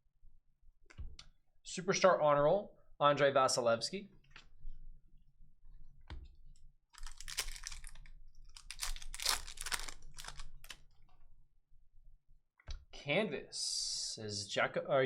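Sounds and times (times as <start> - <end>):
cards crinkling and rustling: 7.0 - 10.8.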